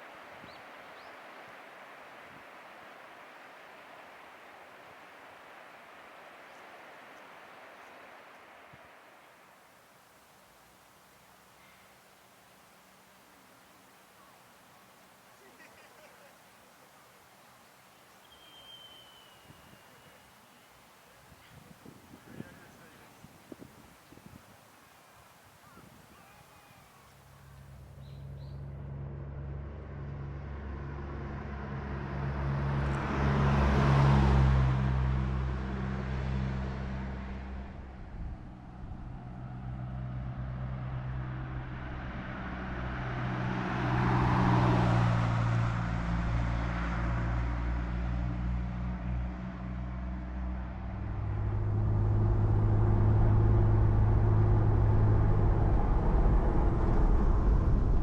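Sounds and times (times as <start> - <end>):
vehicles passing by: 0.0 - 58.0
car engine humming: 26.7 - 58.0.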